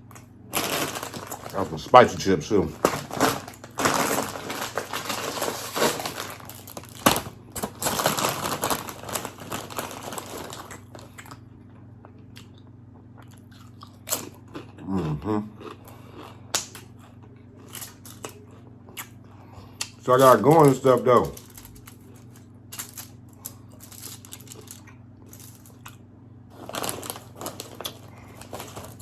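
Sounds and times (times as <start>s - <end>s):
crunching and chewing chips: 0.0s - 29.0s
person humming: 14.8s - 15.6s.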